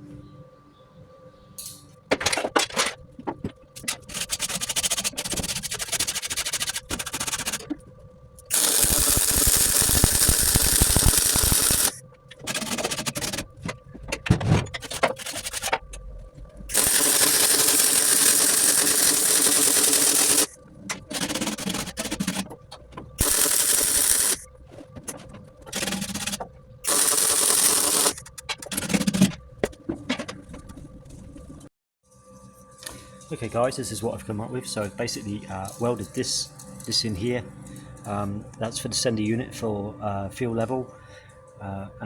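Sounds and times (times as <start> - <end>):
welding crackle: 8.4 - 12.0, 16.7 - 20.6, 23.2 - 24.5, 26.9 - 28.2.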